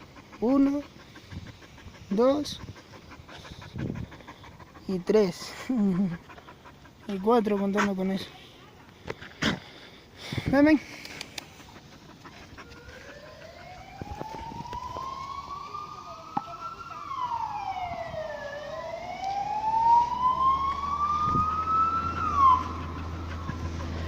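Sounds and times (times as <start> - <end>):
emergency vehicle siren wailing: 12.4 - 24.0.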